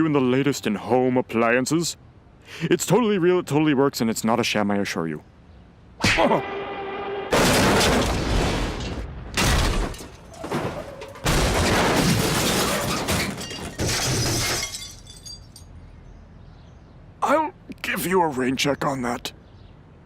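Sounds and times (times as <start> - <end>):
cartoon crashes and shattering: 7.3 - 15.2.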